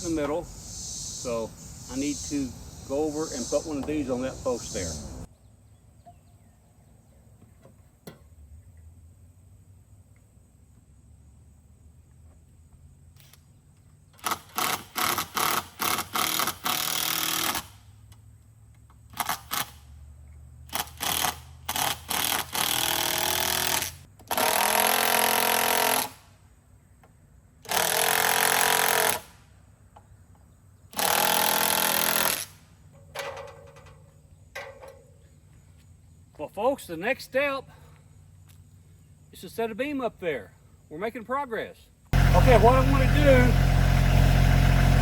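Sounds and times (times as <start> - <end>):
power driver driving screws: 20.7 - 26.2, 31.0 - 32.5.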